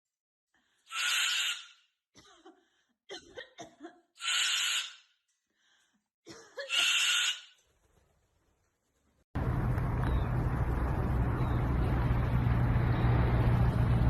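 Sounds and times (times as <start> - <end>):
bird harsh cough-like calls: 0.9 - 5.0, 6.3 - 7.4.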